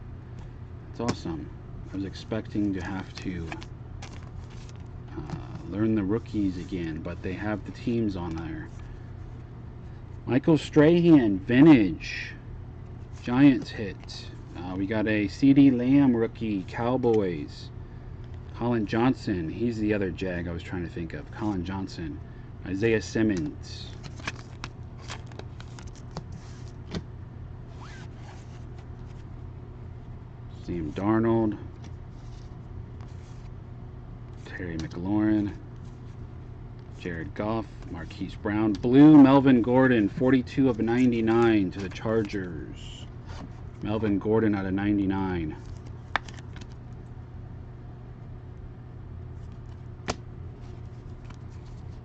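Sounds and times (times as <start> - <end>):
steady low hum: 0.0 - 52.0
trading cards and wrappers rustling: 2.2 - 8.9, 23.4 - 26.8, 31.7 - 33.5, 36.9 - 43.5, 45.5 - 46.8, 49.4 - 52.0.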